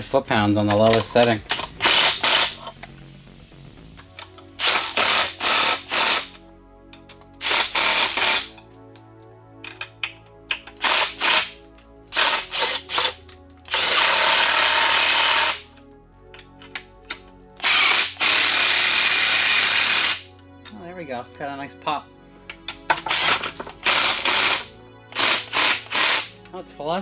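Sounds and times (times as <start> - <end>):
impact wrench hammering: 1.4 - 2.7, 4.6 - 6.3, 12.2 - 15.6, 22.9 - 24.6, 25.2 - 26.3.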